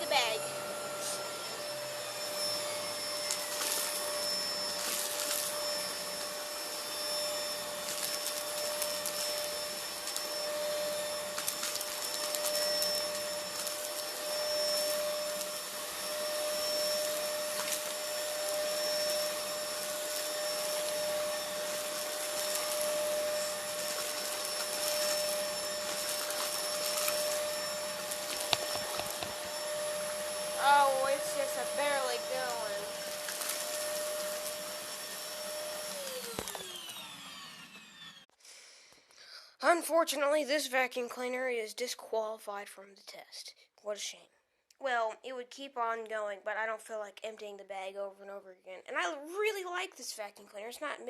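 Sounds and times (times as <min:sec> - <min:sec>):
vacuum cleaner whine: 0:00.0 - 0:38.4
debris crackling up nozzle: 0:21.7 - 0:29.6.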